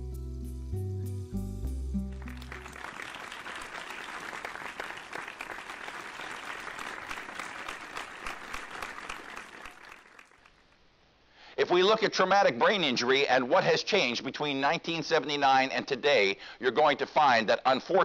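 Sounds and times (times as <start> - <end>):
background music: 0.0 - 3.3
audience applauding: 2.1 - 10.6.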